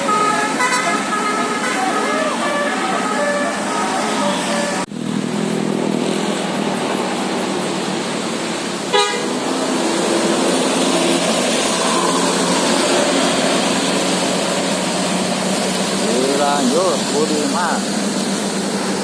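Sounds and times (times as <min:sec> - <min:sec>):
musical air horn tune: 0:00.0 - 0:04.9, 0:08.9 - 0:09.4
street noise: 0:00.0 - 0:19.0.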